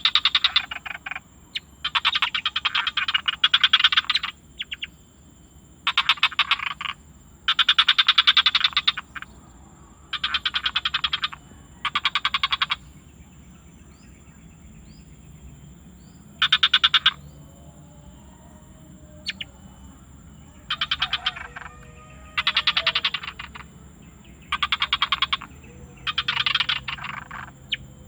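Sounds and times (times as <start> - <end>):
frog croaking: 0.0 - 28.0
steady high-pitched whine: 8.2 - 28.0.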